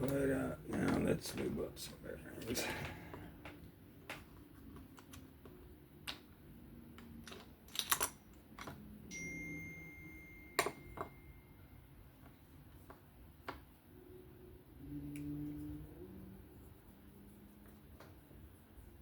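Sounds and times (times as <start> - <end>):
faint thin high tone: 9.1 - 11.9.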